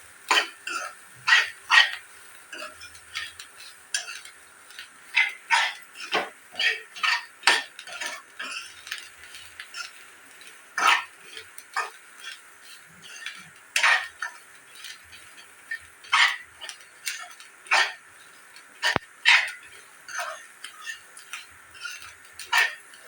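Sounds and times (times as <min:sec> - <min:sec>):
utensil scraping a cooking pan: 0:00.2 - 0:23.0.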